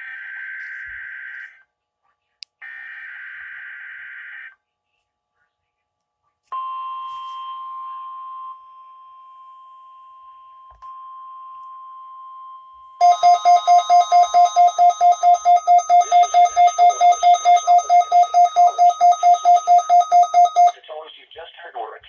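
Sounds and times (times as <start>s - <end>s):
rapid loud beeping: 13.0s - 20.8s
steady high alarm tone: 13.0s - 20.8s.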